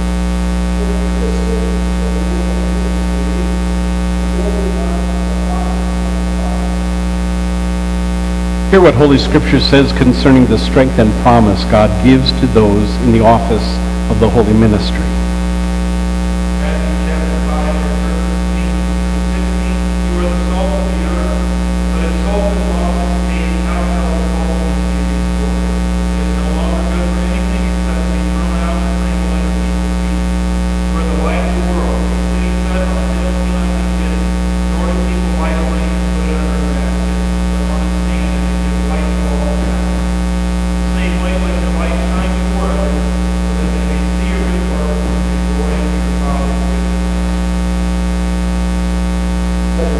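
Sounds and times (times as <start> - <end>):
electrical mains hum: 0.0 - 49.9
faint indistinct voices: 0.7 - 3.6, 4.3 - 6.9.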